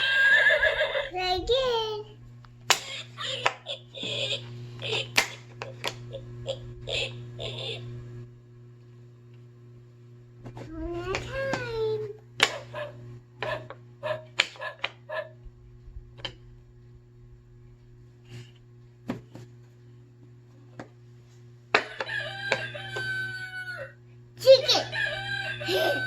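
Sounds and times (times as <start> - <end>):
rooster crowing: 0.0 - 1.1, 21.8 - 24.0, 24.7 - 26.0.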